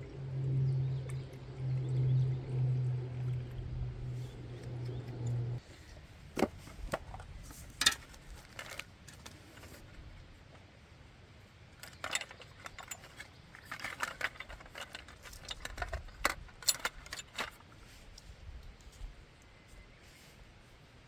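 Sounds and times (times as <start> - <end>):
small metal objects clinking: 11.8 - 17.6.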